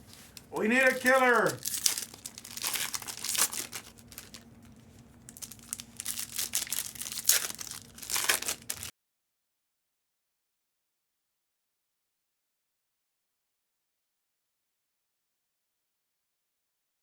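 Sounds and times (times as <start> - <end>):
plastic wrapping crinkling and tearing: 0.0 - 8.9.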